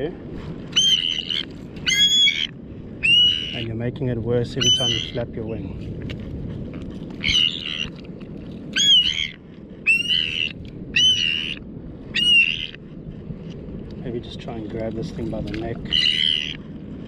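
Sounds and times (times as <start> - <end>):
bird squawking in distress: 0.7 - 3.7, 4.6 - 5.2, 7.2 - 8.0, 8.8 - 12.8, 15.8 - 16.6.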